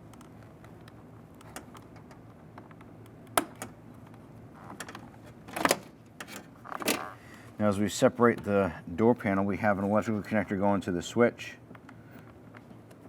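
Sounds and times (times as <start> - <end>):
sharp plastic clicks: 0.1 - 3.8
light rattling of door panel parts: 4.5 - 7.3.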